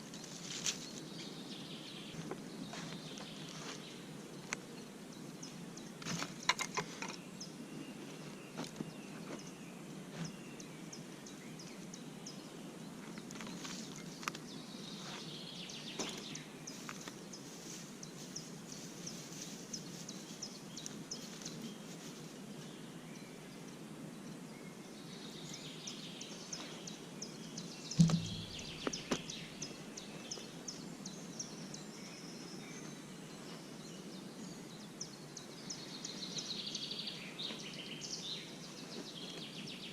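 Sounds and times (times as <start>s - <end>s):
steady low hiss: 0.0s - 39.9s
birds chirping and calling: 25.7s - 31.8s
loud knock: 28.0s - 29.2s.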